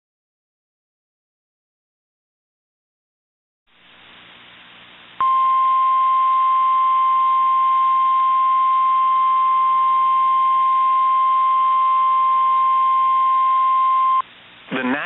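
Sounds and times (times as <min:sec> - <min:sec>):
faint radio hiss: 0:03.7 - 0:11.7, 0:14.2 - 0:15.0
steady alarm beep: 0:05.2 - 0:14.2.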